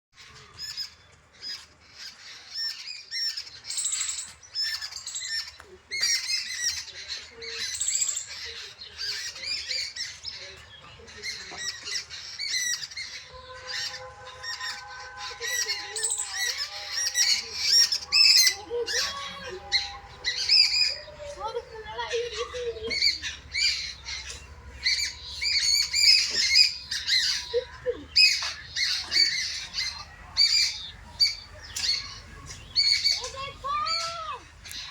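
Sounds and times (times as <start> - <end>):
birds squawking and chirping: 0.2 - 34.9
steady low tones: 13.1 - 33.7.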